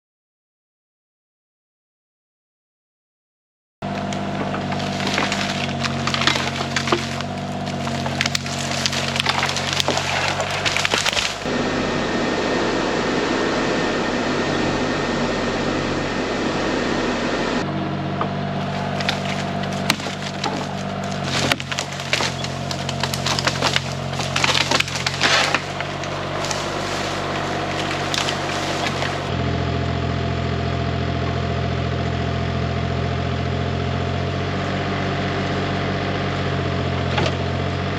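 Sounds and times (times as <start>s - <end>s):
excavator diesel engine: 3.8s - 37.9s
wood cracking and splintering: 3.9s - 11.5s, 18.3s - 29.4s.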